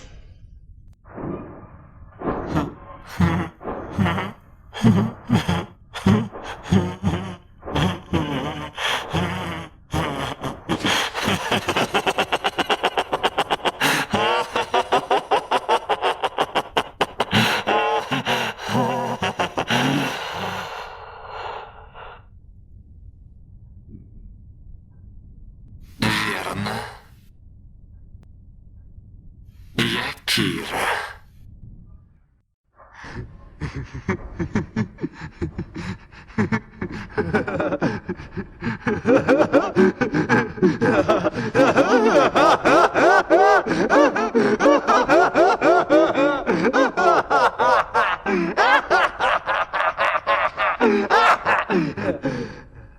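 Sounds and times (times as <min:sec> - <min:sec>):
man laughing maniacally: 0:02.4 - 0:22.2, 0:26.0 - 0:27.0, 0:33.0 - 0:52.9.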